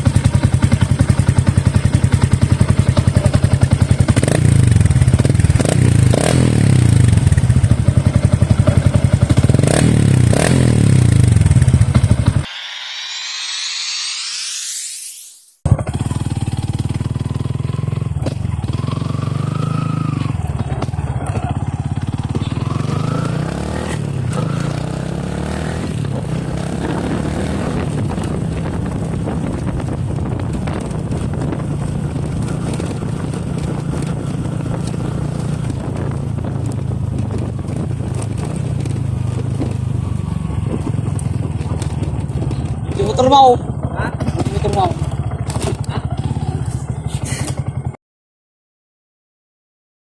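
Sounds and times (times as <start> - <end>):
motorcycle engine idling: 0.0 - 5.6, 15.9 - 23.0, 29.2 - 48.0.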